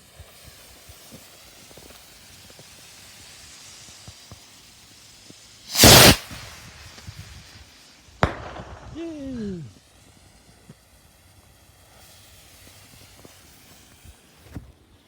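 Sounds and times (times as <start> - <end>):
firework fuse hissing: 0.0 - 15.0
firework bursting: 5.6 - 14.3.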